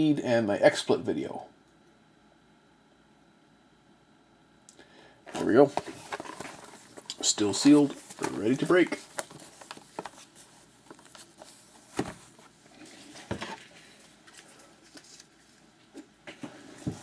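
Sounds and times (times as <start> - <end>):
wrapper and cardboard rustling: 5.3 - 15.8.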